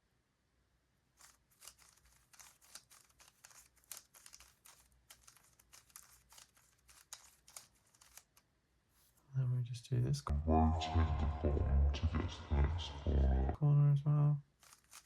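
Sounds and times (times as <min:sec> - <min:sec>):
puzzle cube clicking: 0:01.2 - 0:08.4, 0:14.6 - 0:15.0.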